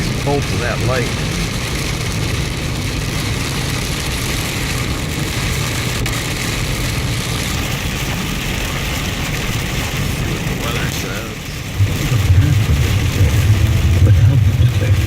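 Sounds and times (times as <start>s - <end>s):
car engine and road rumble: 0.0s - 15.0s
rain hissing: 0.0s - 15.0s.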